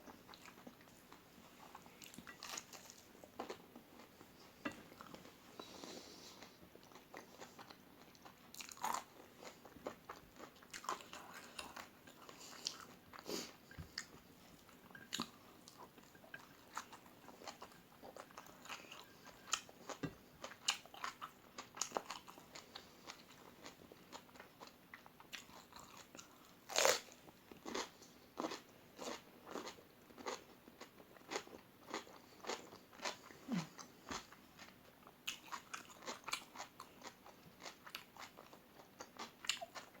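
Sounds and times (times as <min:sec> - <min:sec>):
chewing crispy food crunches: 0:06.9 - 0:13.0, 0:16.7 - 0:40.0.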